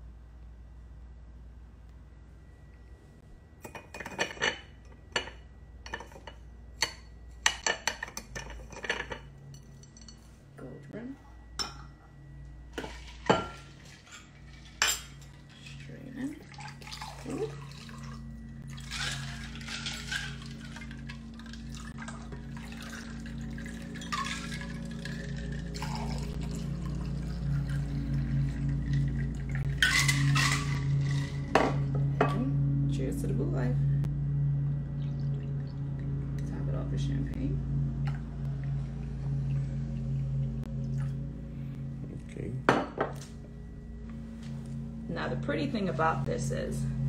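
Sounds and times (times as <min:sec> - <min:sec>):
low hum: 0:00.0 - 0:47.0
glassware and utensils clinking: 0:03.6 - 0:10.3, 0:11.6 - 0:12.1, 0:12.8 - 0:15.9, 0:29.7 - 0:32.4
liquid pouring into glass: 0:16.4 - 0:31.4.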